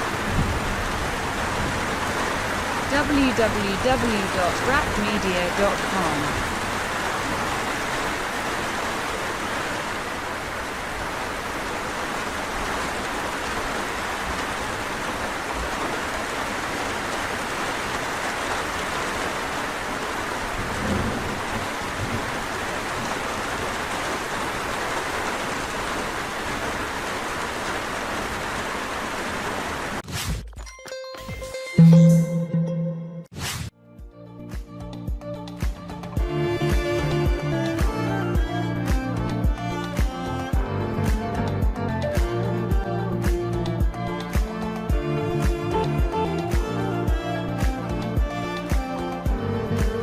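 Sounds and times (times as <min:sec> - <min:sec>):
steady rain falling: 0:00.0 - 0:30.0, 0:35.5 - 0:50.0.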